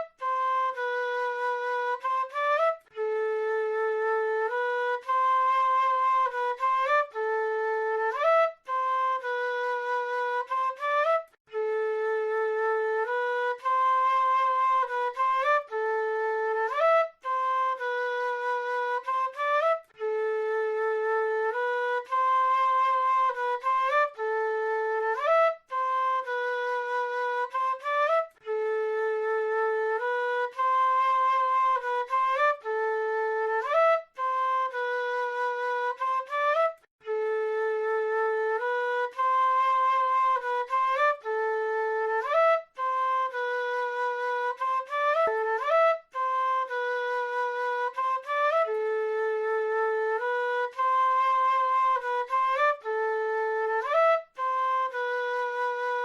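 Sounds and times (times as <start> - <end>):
flute playing slow melody: 0.0 - 56.0.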